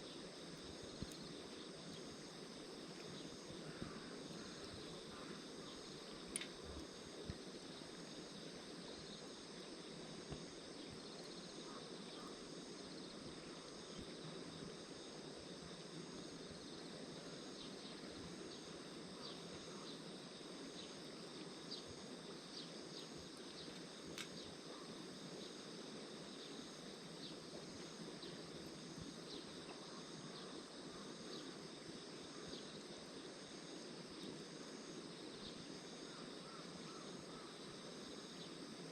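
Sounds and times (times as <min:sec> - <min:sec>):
insects trilling: 0:00.0 - 0:38.9
faint sharp ticks: 0:06.3 - 0:07.4, 0:23.7 - 0:24.5.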